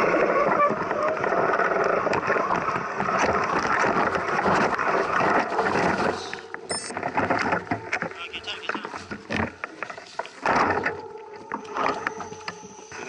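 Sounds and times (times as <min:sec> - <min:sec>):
bike tyres on rough trail: 0:00.0 - 0:08.1.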